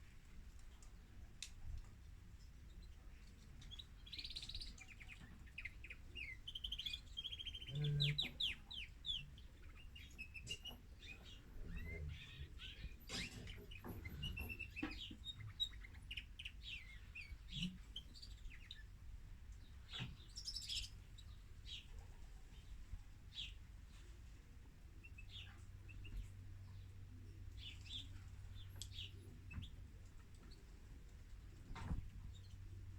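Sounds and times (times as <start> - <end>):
canary chirping: 3.7 - 18.9.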